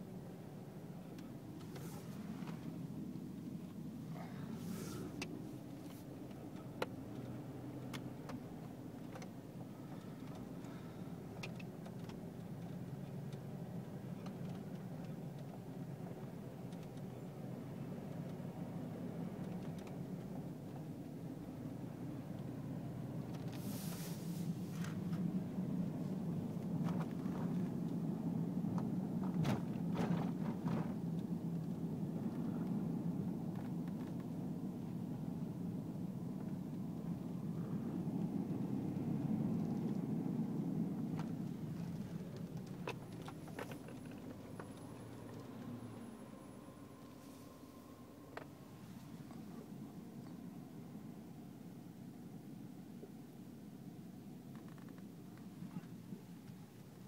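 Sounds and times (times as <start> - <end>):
car driving rumble: 0.0 - 57.0
light clicks and ticks: 5.1 - 17.4.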